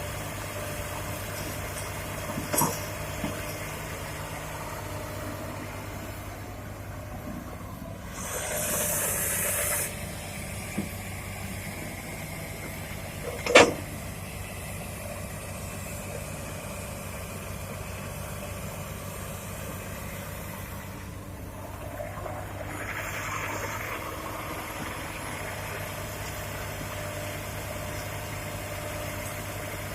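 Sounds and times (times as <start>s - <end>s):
diesel machinery running: 0.0s - 29.9s
high hiss: 8.1s - 10.0s.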